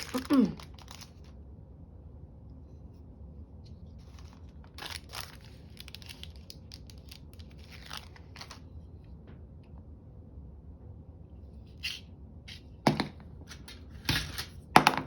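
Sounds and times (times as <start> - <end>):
paper rustling and crackling: 0.0 - 1.4, 3.9 - 8.7.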